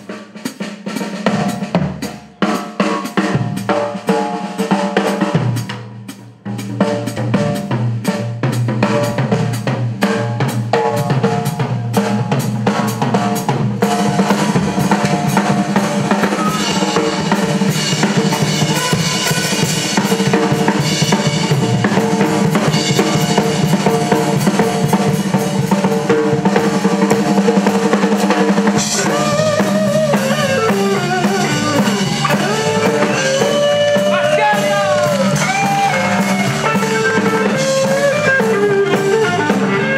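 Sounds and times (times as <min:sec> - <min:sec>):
live blues-rock band: 0:00.0 - 0:39.9
snare and bass drum: 0:00.0 - 0:39.9
bass line: 0:13.9 - 0:26.0, 0:28.7 - 0:39.9
lead instrument bending notes: 0:28.9 - 0:39.9.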